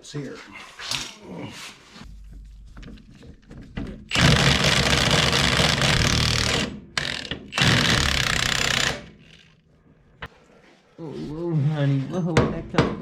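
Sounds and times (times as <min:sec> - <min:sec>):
impact wrench rattling: 0:04.1 - 0:09.6.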